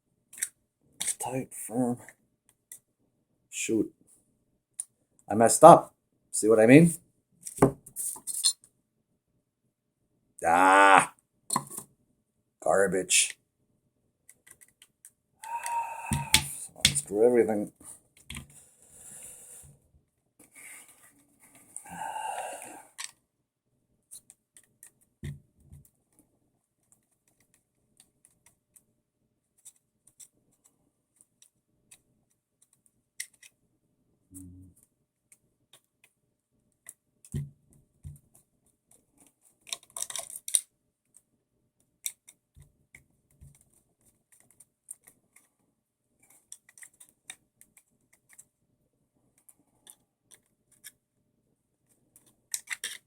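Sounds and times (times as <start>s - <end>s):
clicks of small parts and tools: 14.3s - 15.2s, 32.6s - 33.6s, 39.2s - 41.2s, 42.0s - 42.4s, 46.2s - 48.5s, 52.2s - 53.0s.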